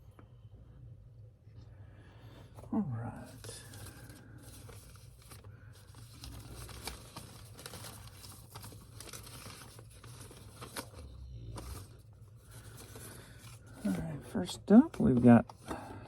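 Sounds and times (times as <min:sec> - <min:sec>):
packing materials rustling: 0:03.1 - 0:16.0.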